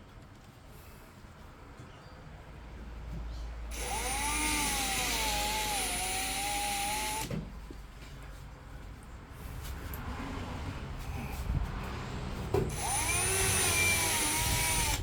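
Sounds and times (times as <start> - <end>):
power drill driving a screw: 3.7 - 7.4, 12.7 - 15.0.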